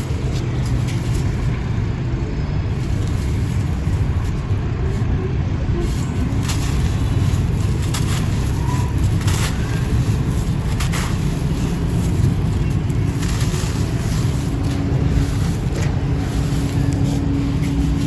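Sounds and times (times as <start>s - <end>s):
wind rumbling on microphone: 0.0s - 18.0s
cement chunks crumbling: 5.8s - 18.0s.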